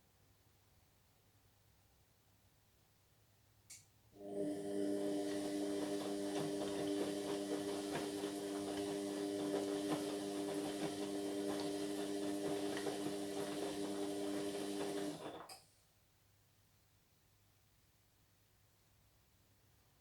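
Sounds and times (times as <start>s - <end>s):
washing machine motor whine: 4.2s - 15.5s.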